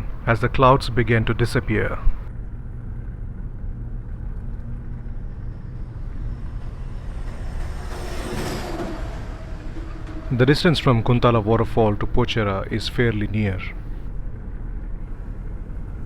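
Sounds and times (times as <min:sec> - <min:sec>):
rushing noise: 0:00.0 - 0:02.3, 0:04.2 - 0:14.1
car engine and road rumble: 0:00.0 - 0:16.0.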